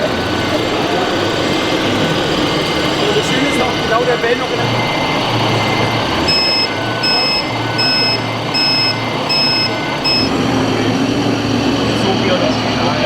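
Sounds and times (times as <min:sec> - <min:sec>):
reversing beeper: 0:06.2 - 0:10.6.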